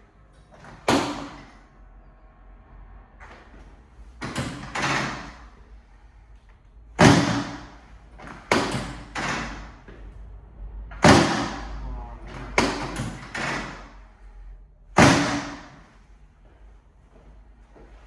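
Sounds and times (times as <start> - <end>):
treatment table thudding: 0.6 - 1.6, 3.2 - 5.5, 7.0 - 10.0, 11.0 - 14.0, 15.0 - 15.9.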